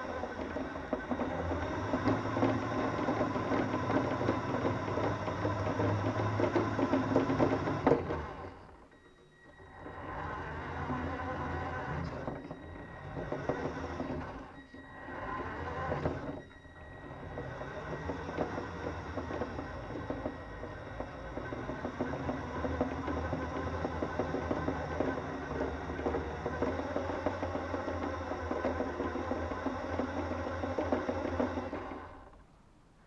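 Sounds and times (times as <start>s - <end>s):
toy car electric motor chatter: 9.7s - 32.3s.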